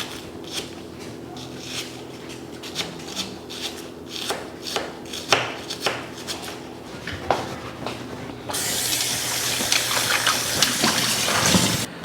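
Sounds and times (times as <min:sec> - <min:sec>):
knife scraping fish: 0:00.0 - 0:06.6.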